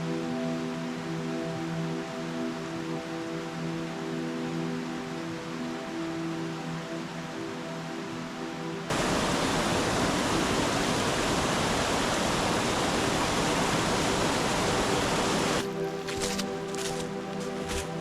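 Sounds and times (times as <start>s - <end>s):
background music with held tones: 0.0s - 18.0s
water rushing over rocks: 8.9s - 18.0s.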